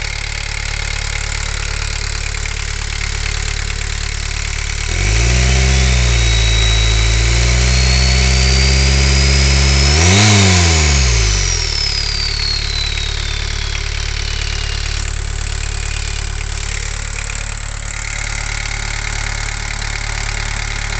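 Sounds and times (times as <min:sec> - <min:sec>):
diesel engine revving: 0:00.0 - 0:20.9
turbocharger whistle: 0:04.8 - 0:16.8.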